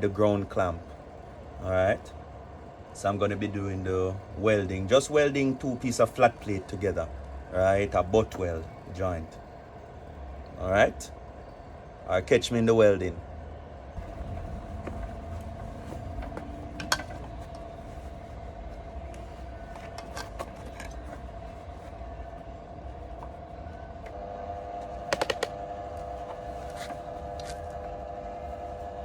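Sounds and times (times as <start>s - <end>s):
welder humming: 22.4s - 29.0s.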